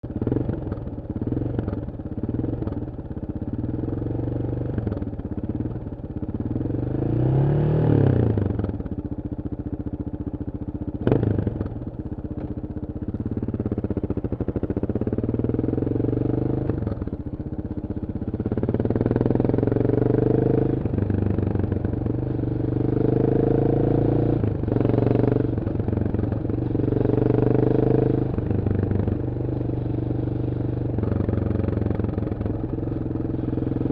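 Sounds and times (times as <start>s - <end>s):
motorcycle engine revving: 0.0s - 9.1s, 10.6s - 33.9s.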